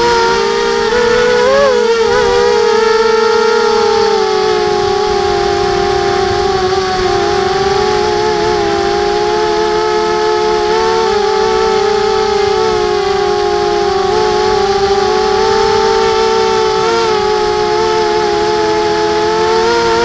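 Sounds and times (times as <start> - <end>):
drone propellers whining: 0.0 - 20.0.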